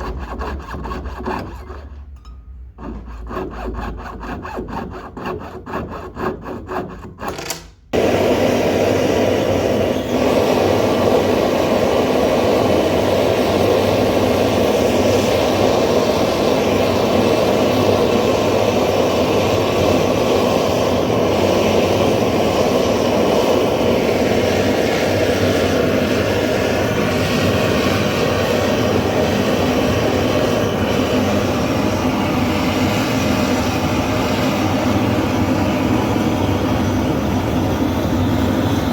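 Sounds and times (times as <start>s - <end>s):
hand tool rasping on metal: 0.0s - 7.5s.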